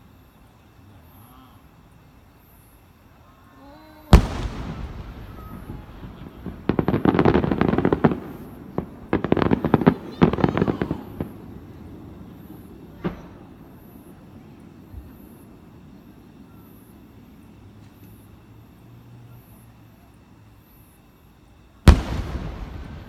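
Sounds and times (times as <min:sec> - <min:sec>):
firework crackling: 0:00.0 - 0:23.0
firework shell booming: 0:04.1 - 0:14.1, 0:21.8 - 0:23.0.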